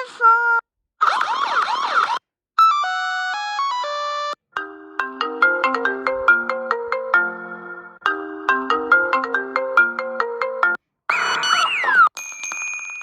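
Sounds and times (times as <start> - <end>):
chime-like ringtone melody: 2.6 - 13.0
electronic ringtone tune: 2.6 - 13.0.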